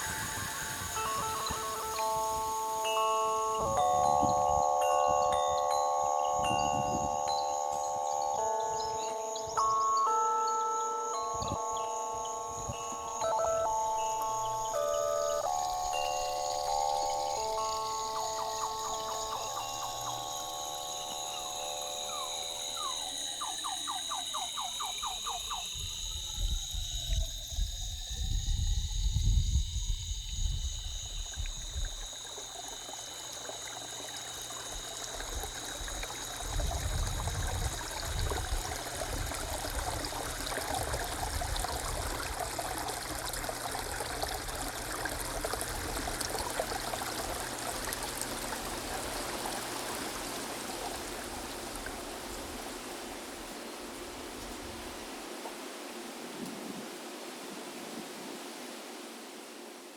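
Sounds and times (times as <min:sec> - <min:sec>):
even rushing hiss: 0:00.0 - 0:09.6.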